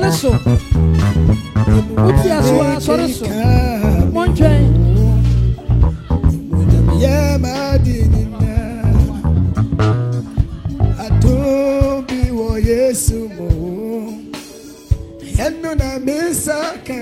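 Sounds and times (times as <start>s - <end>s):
bass guitar notes: 0.0s - 11.7s
guitar: 0.0s - 17.0s
person singing: 1.6s - 17.0s.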